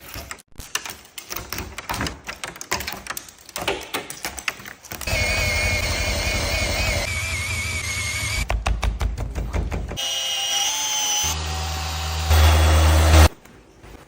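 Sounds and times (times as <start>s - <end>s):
power tool whining: 5.1s - 8.5s, 10.0s - 13.3s
knocks and clatter: 8.4s - 10.0s.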